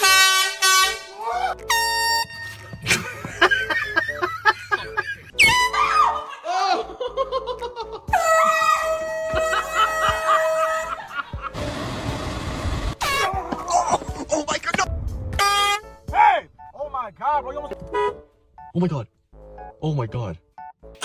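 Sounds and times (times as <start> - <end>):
air horn blast: 0.0 - 3.0
people laughing and shrieking: 2.9 - 11.5.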